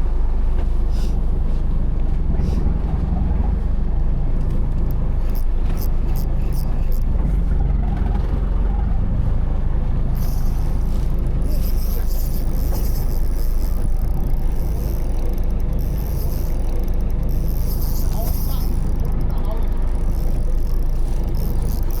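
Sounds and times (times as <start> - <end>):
boat engine rumble: 0.0 - 22.0
wind: 0.0 - 22.0
water noise: 4.7 - 7.6, 10.1 - 22.0.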